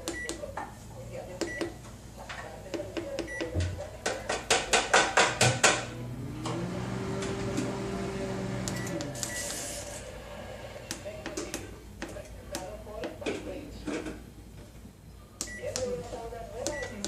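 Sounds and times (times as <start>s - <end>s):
microwave oven humming: 5.6s - 12.9s.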